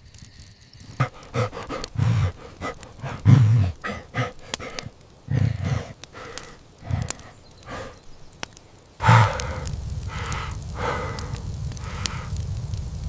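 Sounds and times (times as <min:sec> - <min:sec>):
person grunting and growling: 0:01.0 - 0:08.0, 0:09.0 - 0:12.3.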